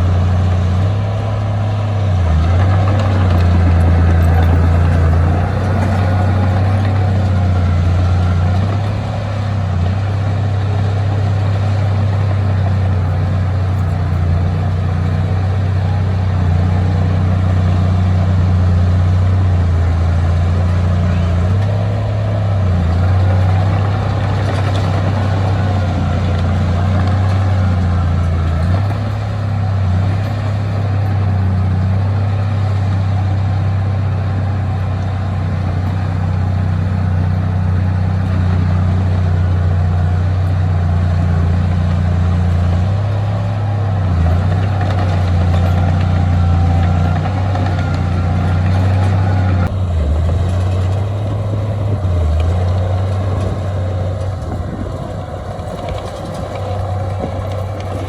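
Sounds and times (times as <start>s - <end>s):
heavy diesel engine under load: 0.0s - 58.0s.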